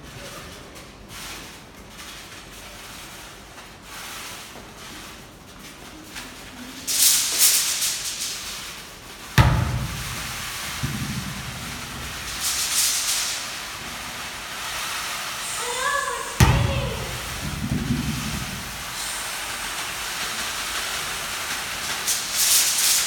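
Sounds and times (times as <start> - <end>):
low rumble: 9.4 - 12.6
sharp bang: 9.4 - 14.3, 16.4 - 19.1
hissing noise bursts: 9.4 - 15.5, 16.3 - 19.8.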